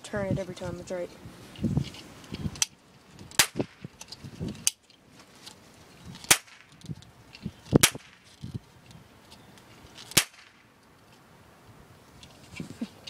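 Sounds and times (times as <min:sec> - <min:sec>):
cap gun cracks: 0:03.3 - 0:04.0, 0:06.2 - 0:07.0, 0:07.7 - 0:08.2, 0:10.1 - 0:10.7.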